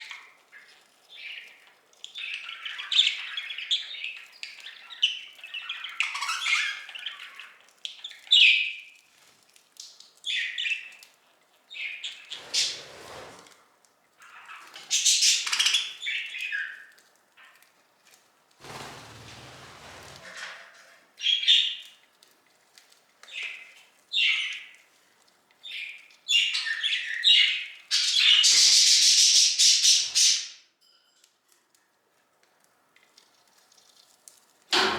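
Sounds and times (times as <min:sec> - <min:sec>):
budgerigars chirping and squawking: 0:12.3 - 0:13.3, 0:26.3 - 0:30.5.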